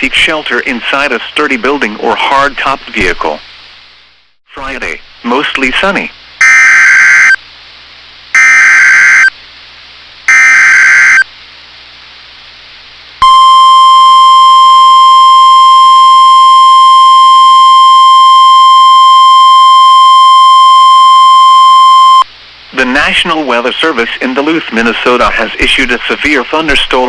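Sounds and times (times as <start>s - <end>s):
screechy digital data bursts: 6.4s - 7.4s, 8.4s - 9.3s, 10.3s - 11.3s
steady warning alarm tone: 6.4s - 7.4s, 8.4s - 9.3s, 10.3s - 11.3s.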